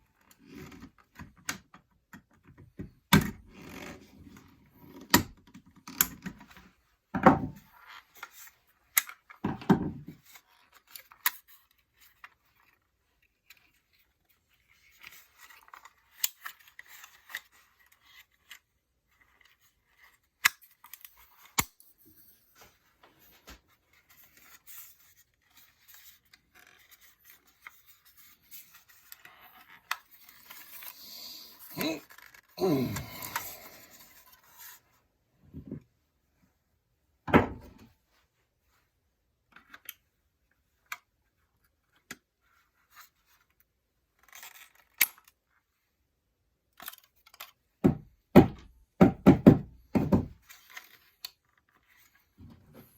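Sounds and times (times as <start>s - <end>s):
clicks and snips of plastic parts: 4.9s - 6.6s, 44.2s - 45.4s, 46.7s - 47.6s.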